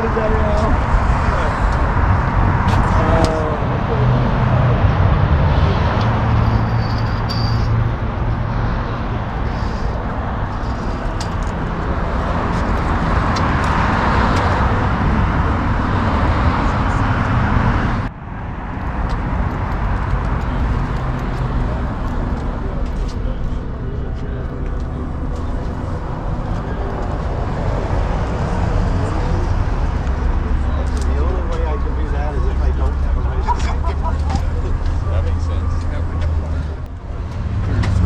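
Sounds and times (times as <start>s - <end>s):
outdoor noise: 0.0s - 38.0s.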